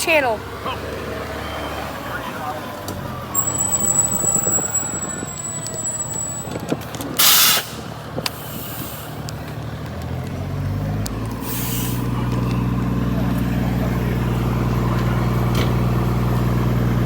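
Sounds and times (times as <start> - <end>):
truck engine running: 0.0 - 17.0
air brakes hissing: 3.3 - 9.3, 11.4 - 12.2.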